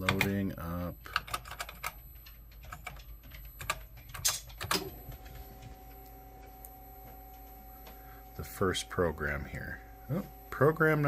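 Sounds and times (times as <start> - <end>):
keyboard typing clicks: 0.0 - 6.7
steady whining hum: 0.0 - 11.0.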